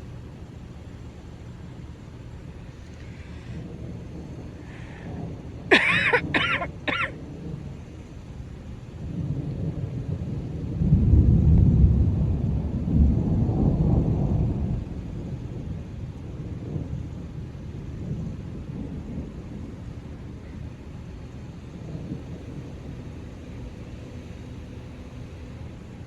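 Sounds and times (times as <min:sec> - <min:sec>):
low rumble of thunder: 0:00.0 - 0:26.0
person coughing: 0:05.7 - 0:07.2.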